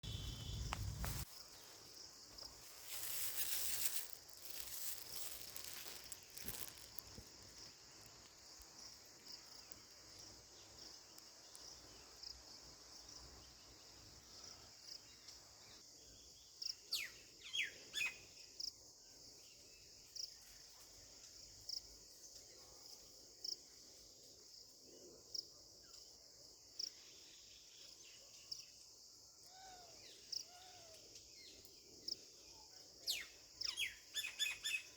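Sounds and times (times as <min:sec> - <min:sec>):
high-pitched insect chorus: 0:00.0 - 0:24.7, 0:26.7 - 0:34.9
bird chirps: 0:33.1 - 0:34.9.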